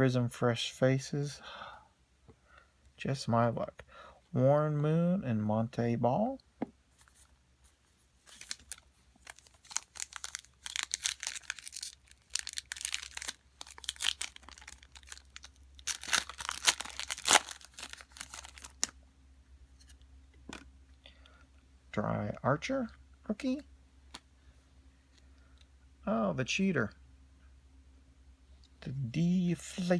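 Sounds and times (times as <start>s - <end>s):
wrapper tearing and crinkling: 8.2s - 18.9s.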